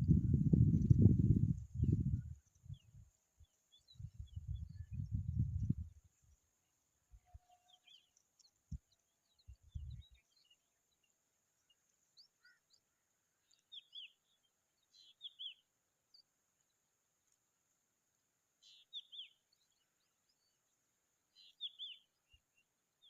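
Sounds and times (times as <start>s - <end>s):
faint high bird chirps: 3.7s - 5.8s, 7.1s - 16.3s, 18.6s - 20.6s, 21.3s - 22.7s.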